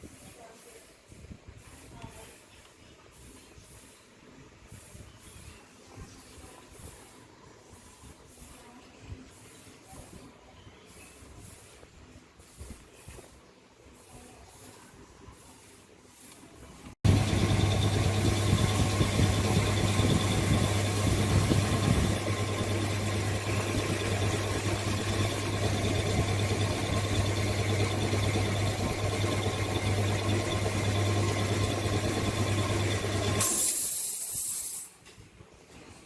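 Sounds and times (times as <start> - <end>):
electric workshop tool humming: 17.0 - 33.6.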